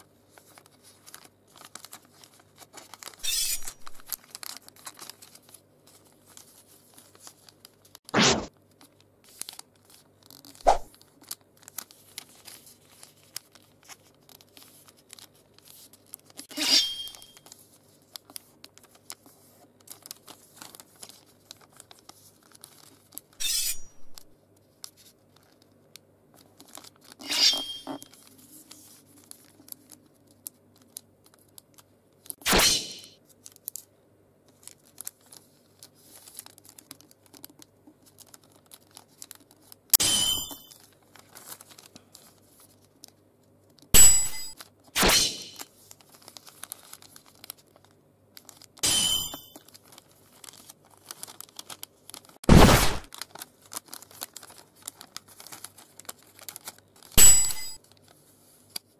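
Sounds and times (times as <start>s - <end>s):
paper being creased and folded: 0.0s - 16.5s, 17.4s - 23.4s, 26.4s - 27.2s, 28.0s - 32.4s, 34.5s - 39.8s, 40.8s - 43.8s, 45.6s - 48.8s, 49.6s - 57.2s
sword sound effects: 8.2s - 8.5s, 10.7s - 10.9s, 32.5s - 33.1s, 44.0s - 45.6s, 52.5s - 53.1s.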